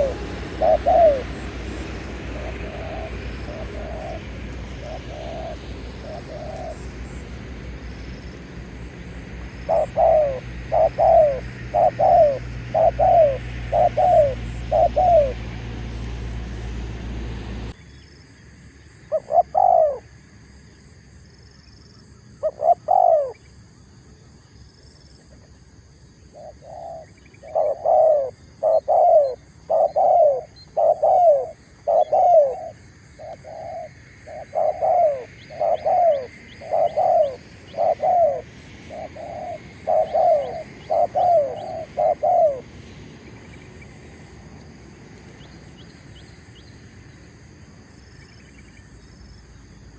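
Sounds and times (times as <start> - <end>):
dove cooing: 0.0 - 17.7, 19.1 - 20.1, 22.4 - 23.4, 26.4 - 42.8.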